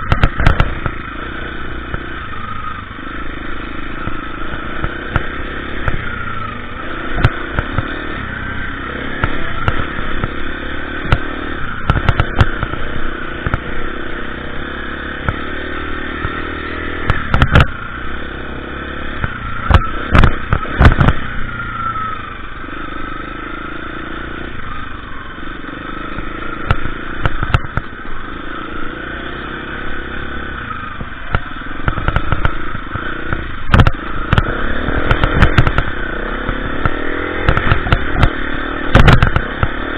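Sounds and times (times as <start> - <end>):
sharp knocks and clatter: 0.0 - 1.0, 9.2 - 13.7, 16.2 - 17.8, 19.2 - 21.3, 26.7 - 27.9, 31.3 - 39.9
dirt bike engine revving: 0.0 - 39.9.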